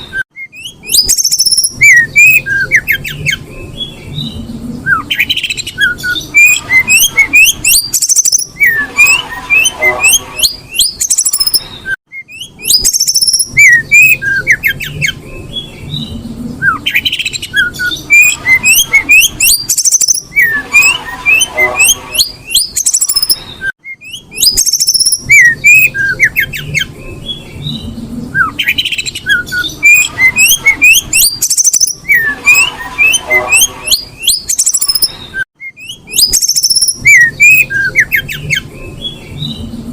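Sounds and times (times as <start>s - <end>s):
bird squawky chirps and whistles: 0.0s - 39.6s.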